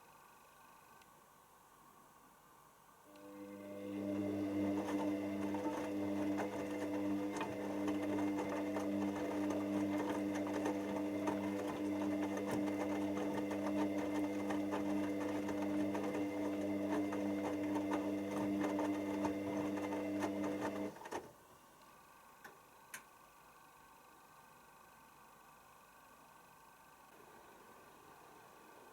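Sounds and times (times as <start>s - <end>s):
washing machine humming and rattling: 3.4s - 21.4s.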